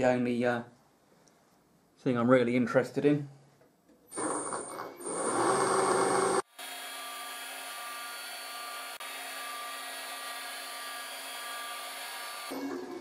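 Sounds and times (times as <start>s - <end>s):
milling machine scraping with whine: 4.2s - 6.4s.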